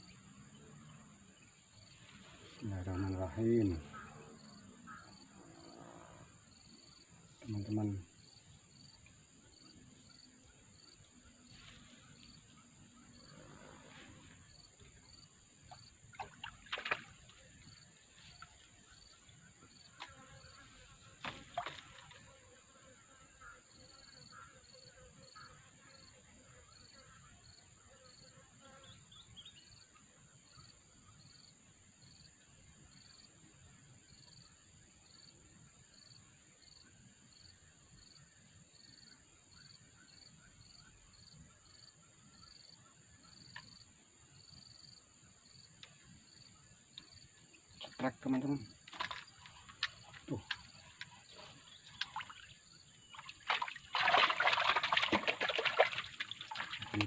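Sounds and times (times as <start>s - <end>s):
cricket chirping: 0.0s - 57.0s
brief knocks or splashes: 15.7s - 17.2s, 21.2s - 22.2s, 48.9s - 50.6s, 53.1s - 57.0s.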